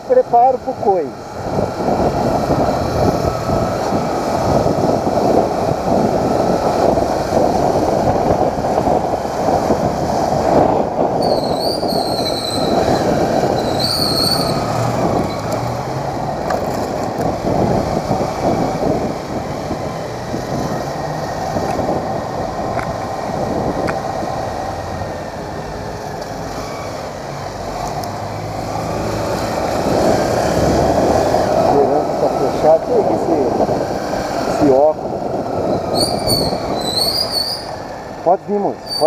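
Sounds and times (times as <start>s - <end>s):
wind and road noise: 0.0s - 39.0s
small motorcycle riding: 0.2s - 39.0s
drum brake squealing: 11.2s - 12.8s, 13.6s - 14.7s, 35.7s - 37.8s.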